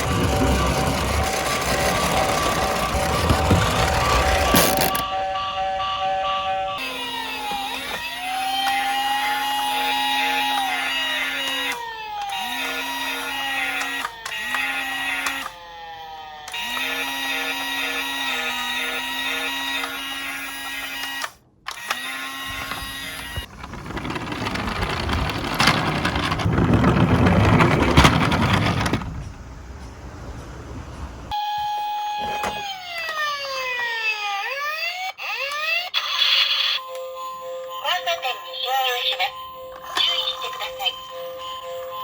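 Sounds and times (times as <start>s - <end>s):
toy cars rolling on plastic: 0.0s - 5.0s, 21.8s - 29.5s
electronic siren wailing: 0.0s - 14.5s, 15.4s - 16.8s, 31.4s - 36.9s.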